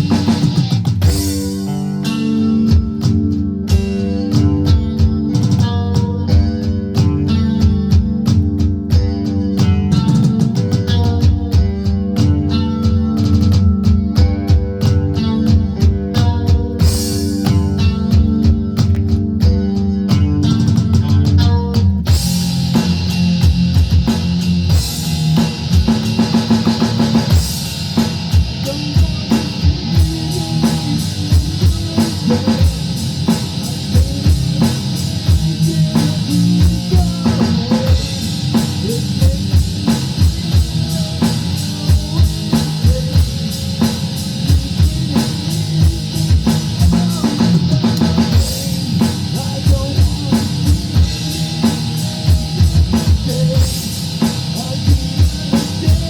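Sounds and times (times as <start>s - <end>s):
drum kit: 0.0s - 56.0s
rock guitar: 0.0s - 56.0s
fast bass drum hits: 22.1s - 56.0s.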